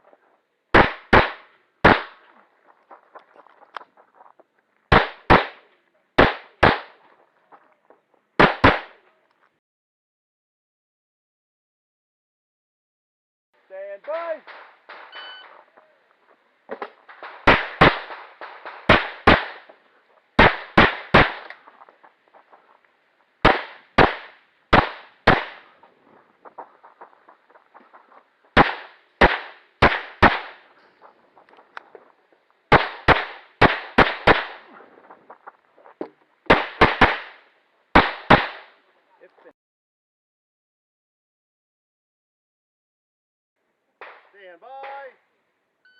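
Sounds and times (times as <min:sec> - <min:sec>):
pistol shots: 0:00.7 - 0:02.4, 0:04.9 - 0:07.2, 0:08.4 - 0:09.0, 0:16.7 - 0:22.0, 0:23.4 - 0:32.1, 0:32.7 - 0:35.4, 0:36.5 - 0:38.8.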